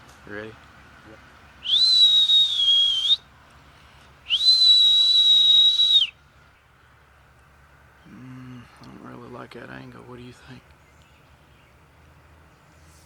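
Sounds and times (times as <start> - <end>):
person whistling: 1.6 - 3.2, 4.3 - 6.1.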